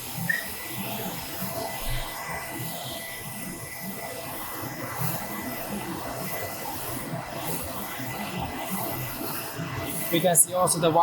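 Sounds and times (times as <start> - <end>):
faint high whine: 0.0 - 3.7
printer hissing and humming: 0.0 - 11.0.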